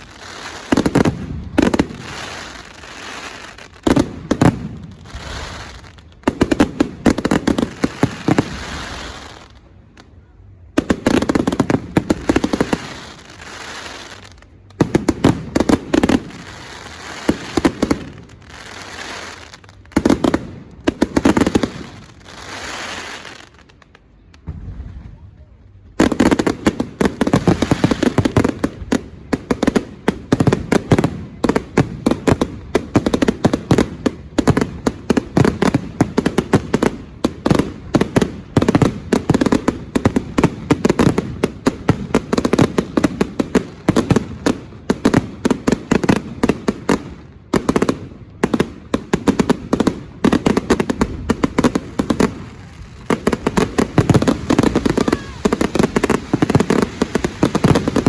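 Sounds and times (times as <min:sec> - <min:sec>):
fireworks bangs and crackles: 0:00.0 - 0:58.0.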